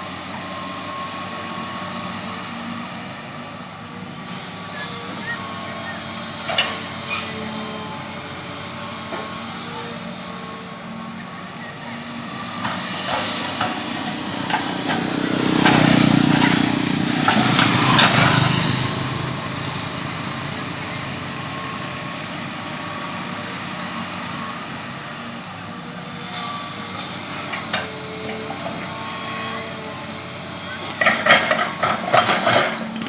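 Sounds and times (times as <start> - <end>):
excavator diesel engine running: 0.0 - 33.0
bucket scraping and clanking: 12.5 - 19.6.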